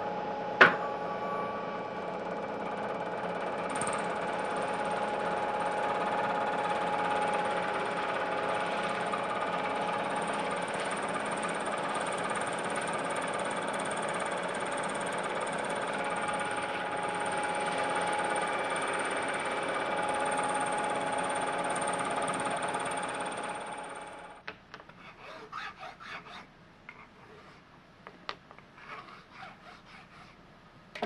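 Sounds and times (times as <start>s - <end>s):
milling machine cutting metal: 0.6s - 24.1s.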